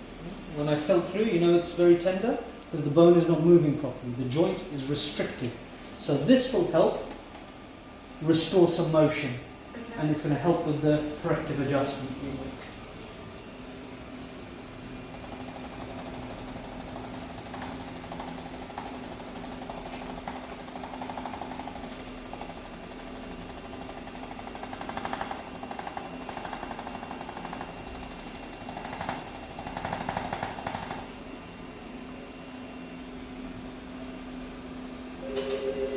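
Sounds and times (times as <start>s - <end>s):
electric percussion massager hammering: 15.1s - 31.1s.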